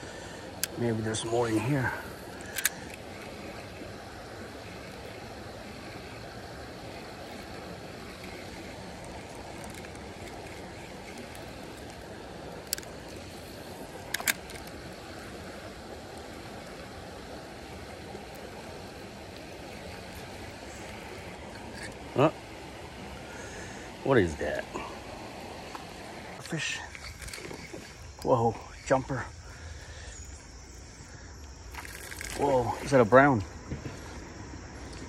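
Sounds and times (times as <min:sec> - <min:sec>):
creek water rushing: 0:00.0 - 0:35.0
sharp clicks: 0:02.3 - 0:03.4, 0:13.9 - 0:14.8.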